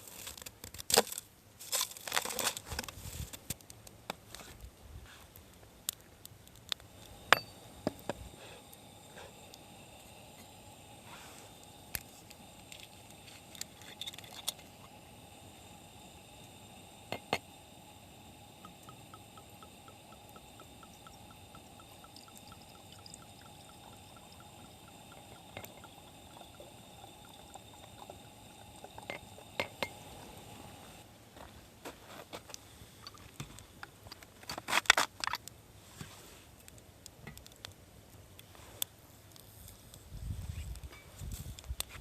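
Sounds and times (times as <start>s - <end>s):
liquid pouring: 8.8s - 31.0s.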